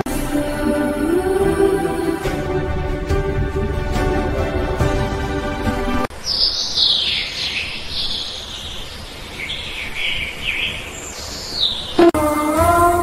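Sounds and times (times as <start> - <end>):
music: 0.0 - 6.1, 12.0 - 13.0
birds chirping and singing: 6.1 - 13.0.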